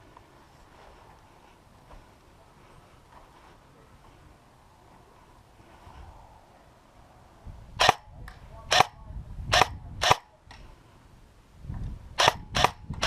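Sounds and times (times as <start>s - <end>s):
airsoft gun firing: 7.8s - 8.1s, 8.7s - 10.3s, 12.2s - 12.8s.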